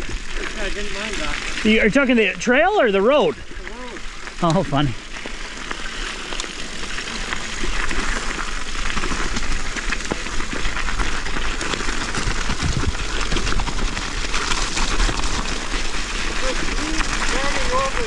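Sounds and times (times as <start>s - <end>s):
bike tyres rushing: 0.0s - 18.0s
bike rattles and clicks: 3.7s - 18.0s.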